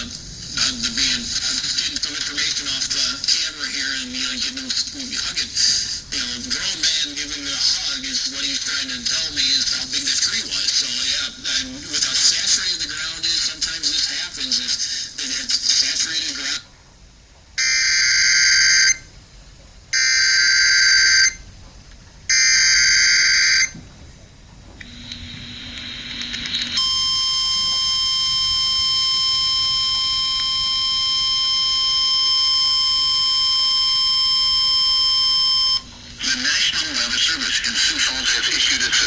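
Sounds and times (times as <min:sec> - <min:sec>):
steady alarm tone: 0:17.6 - 0:19.2, 0:19.9 - 0:21.5, 0:22.3 - 0:23.8, 0:24.8 - 0:39.0
buzzy digital data bursts: 0:25.0 - 0:39.0.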